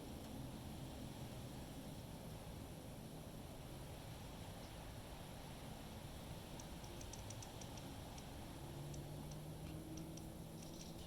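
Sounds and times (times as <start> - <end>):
faint high ticks: 6.5 - 8.3, 8.9 - 11.0.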